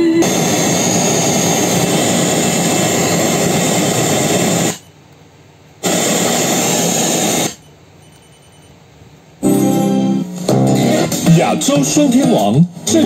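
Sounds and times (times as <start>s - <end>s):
radio static hiss: 0.0s - 4.9s, 5.8s - 7.7s.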